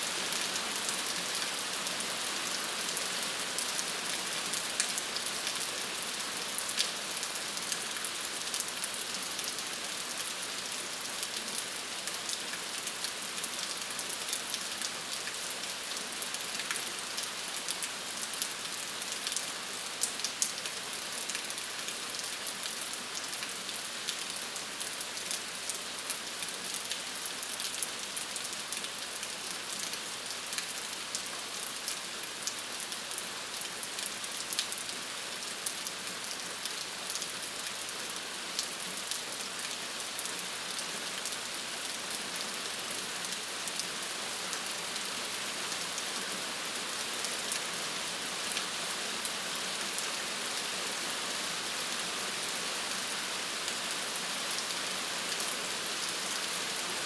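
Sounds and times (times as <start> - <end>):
steady rain: 0.0 - 57.0.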